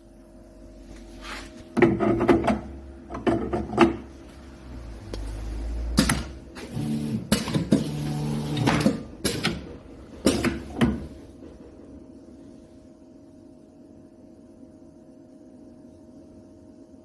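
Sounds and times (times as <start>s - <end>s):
machine motor hum: 1.8s - 12.3s.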